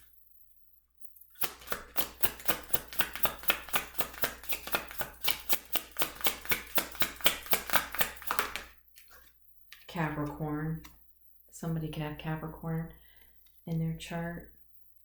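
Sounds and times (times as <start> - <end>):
cards being shuffled: 1.4 - 9.9.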